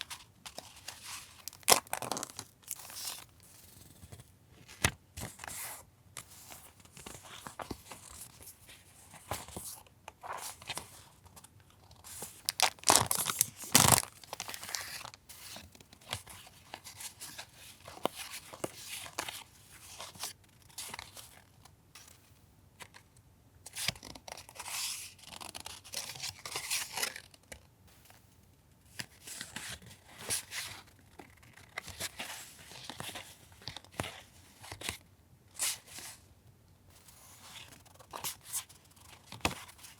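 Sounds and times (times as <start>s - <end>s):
paper rustling and crinkling: 0.0s - 22.2s.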